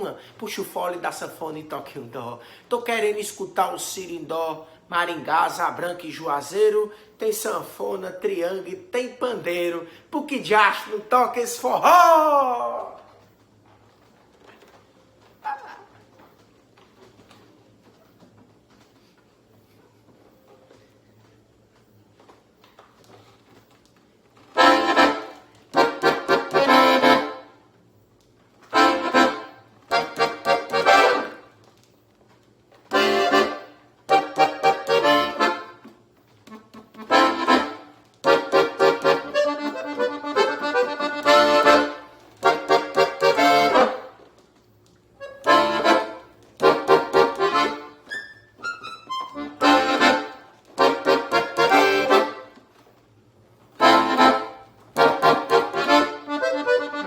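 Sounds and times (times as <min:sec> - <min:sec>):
accordion playing: 0:24.5 - 0:27.6, 0:28.7 - 0:31.5, 0:32.9 - 0:44.3, 0:45.2 - 0:52.7, 0:53.8 - 0:57.0.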